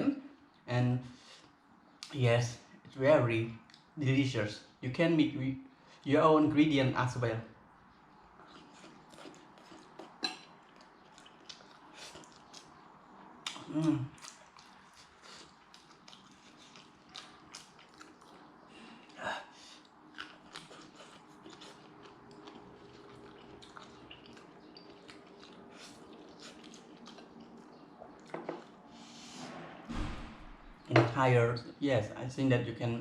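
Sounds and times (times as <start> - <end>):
person chewing food: 8.1 - 19.2, 19.8 - 28.9.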